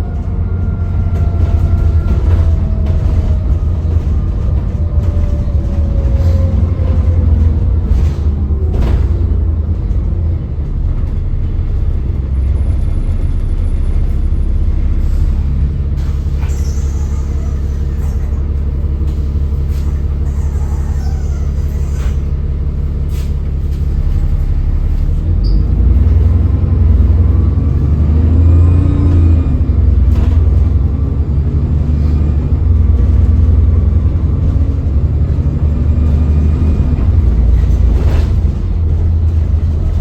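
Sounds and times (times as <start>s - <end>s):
bus engine rumbling: 0.0s - 40.0s
air brake hisses: 23.1s - 23.4s.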